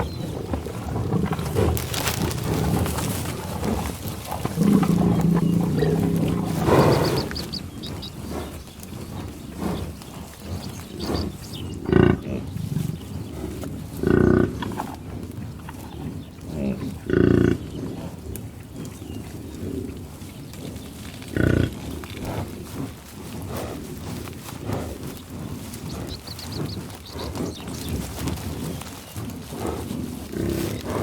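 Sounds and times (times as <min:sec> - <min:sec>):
cattle mooing: 0:00.6 - 0:07.4.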